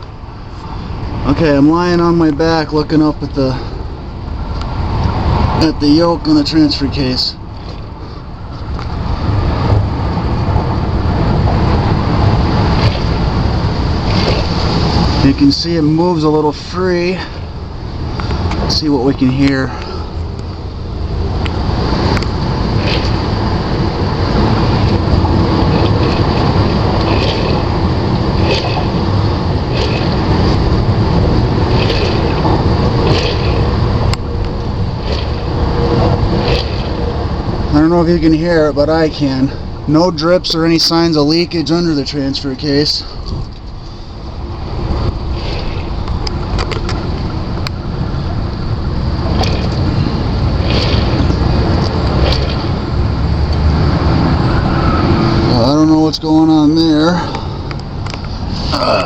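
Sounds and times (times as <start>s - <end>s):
drivetrain low rumble: 0.0s - 59.0s
hissy scraping: 42.8s - 47.2s
sharp click: 49.4s - 49.8s, 51.8s - 52.7s.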